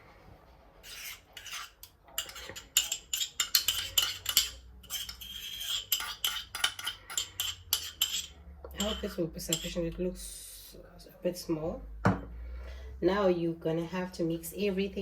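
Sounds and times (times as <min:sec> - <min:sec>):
utensil clinking and scraping a bowl: 0:00.8 - 0:10.1.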